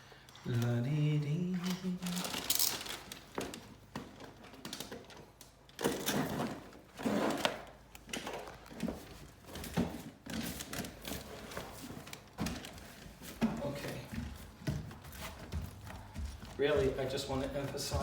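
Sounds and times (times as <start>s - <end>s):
leather rustling scuffs: 12.6s - 18.0s.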